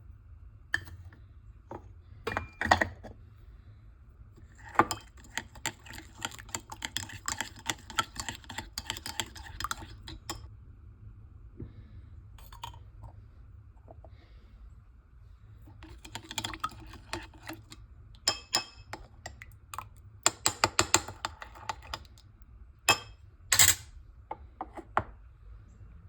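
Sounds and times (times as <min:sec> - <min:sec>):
utensils clinking against dishes: 0:22.9 - 0:23.9.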